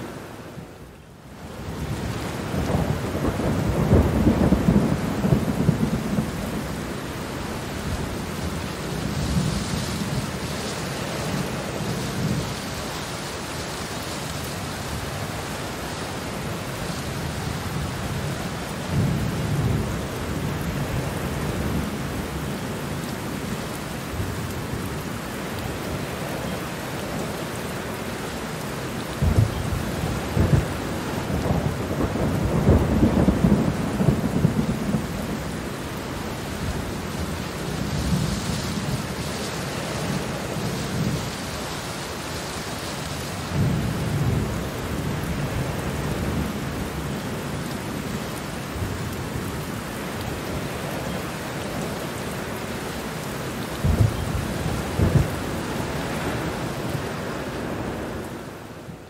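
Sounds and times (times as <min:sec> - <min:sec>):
heavy rain: 0:00.0 - 0:59.0
rolling thunder: 0:01.9 - 0:06.9, 0:29.2 - 0:35.7, 0:53.8 - 0:56.6.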